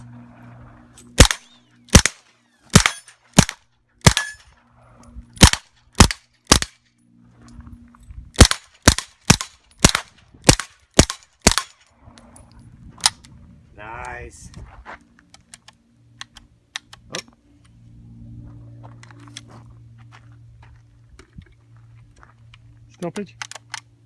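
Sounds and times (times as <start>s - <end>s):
suppressed gunshots: 1.2s - 4.4s, 5.4s - 6.8s, 8.4s - 11.8s.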